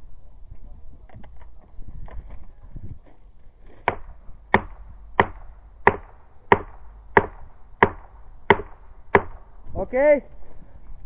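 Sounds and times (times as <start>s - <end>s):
heavy blows striking wood: 3.8s - 9.7s.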